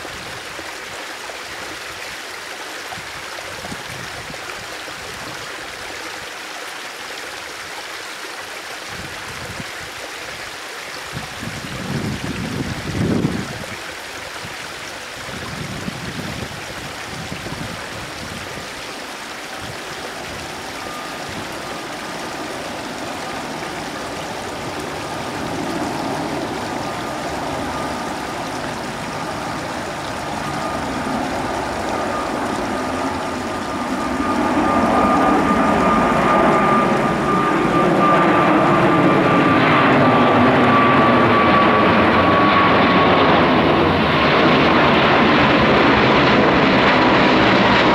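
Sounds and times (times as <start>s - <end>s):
wind rumbling on microphone: 2.9s - 5.9s, 8.9s - 10.4s, 11.1s - 47.9s
jet engines rushing: 15.2s - 47.9s
high steady jet whine: 17.5s - 47.9s.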